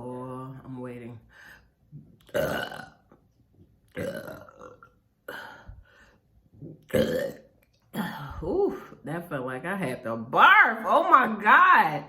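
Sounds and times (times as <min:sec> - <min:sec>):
woman burping deeply: 0:02.3 - 0:03.0, 0:03.9 - 0:05.7, 0:06.6 - 0:08.9.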